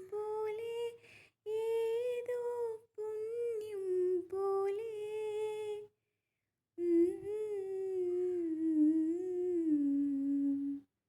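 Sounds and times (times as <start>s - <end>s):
woman humming: 6.8s - 10.9s.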